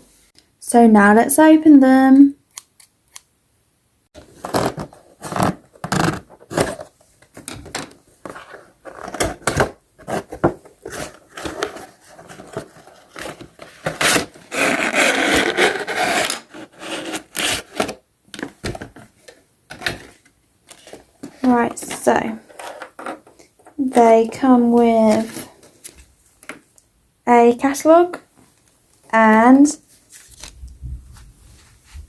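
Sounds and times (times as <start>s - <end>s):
cardboard box scraping and knocking: 8.3s - 18.0s.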